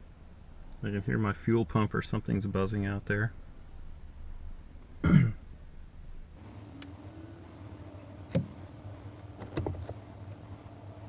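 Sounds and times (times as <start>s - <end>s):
low electric buzz: 6.4s - 11.0s
short knocks and clicks: 6.4s - 11.0s.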